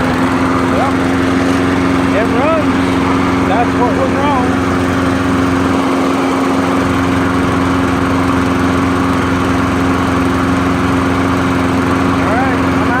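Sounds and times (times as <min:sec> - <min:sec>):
lawnmower engine running: 0:00.0 - 0:13.0.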